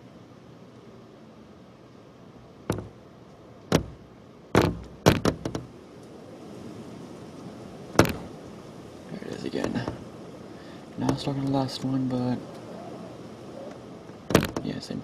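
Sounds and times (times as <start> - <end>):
sharp knocks: 2.7 - 3.0, 3.7 - 5.7, 8.0 - 8.3, 14.3 - 14.7
severe windstorm: 3.8 - 15.0.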